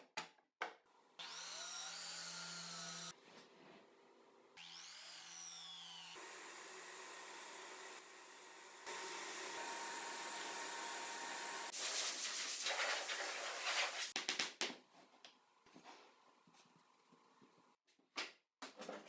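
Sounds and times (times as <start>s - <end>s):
workshop tool hissing: 5.5s - 14.2s.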